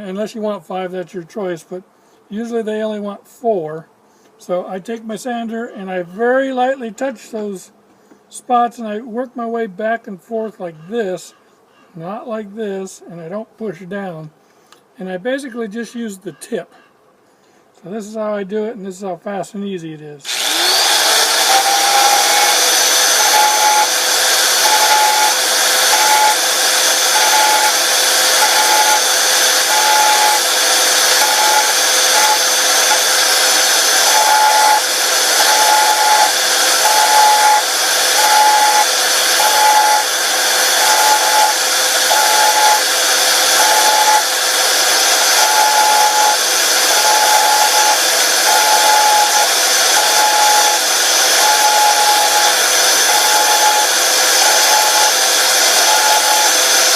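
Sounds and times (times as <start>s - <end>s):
electric sander whining: 20.2s - 56.9s.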